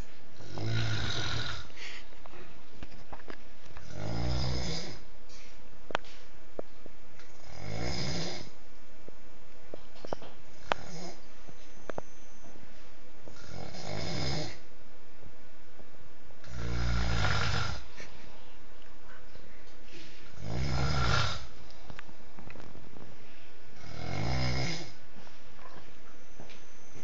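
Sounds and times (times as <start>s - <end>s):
man snoring loudly: 0.4s - 1.7s, 3.8s - 5.0s, 7.4s - 8.6s, 13.4s - 14.6s, 16.4s - 17.9s, 20.4s - 21.5s, 23.8s - 25.0s.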